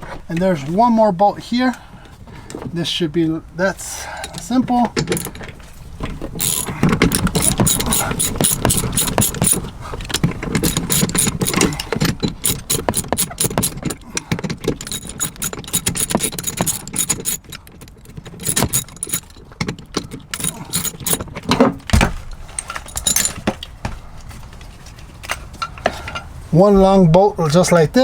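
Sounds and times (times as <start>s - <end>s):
metal tool clatter: 4.1s - 5.6s, 6.4s - 21.6s, 22.5s - 23.6s
socket ratchet clicking: 4.2s - 4.4s, 5.0s - 5.4s, 6.4s - 21.4s, 22.8s - 23.3s.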